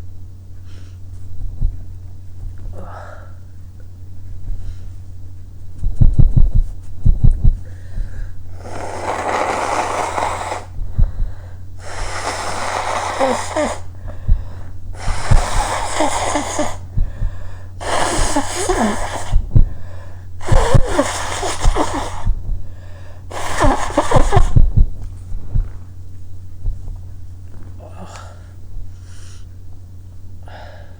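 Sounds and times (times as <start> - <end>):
dull thumps: 3.7 - 8.3, 10.7 - 11.5, 13.9 - 15.7
person blowing nose: 8.5 - 10.9, 11.8 - 14.1, 15.0 - 17.0, 17.8 - 19.6, 20.4 - 22.4, 23.3 - 24.8.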